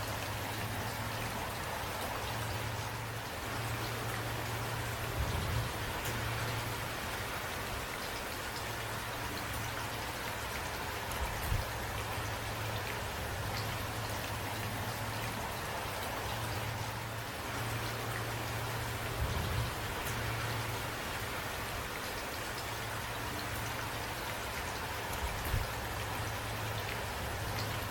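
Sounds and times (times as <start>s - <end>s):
steady rain falling: 0.0s - 27.9s.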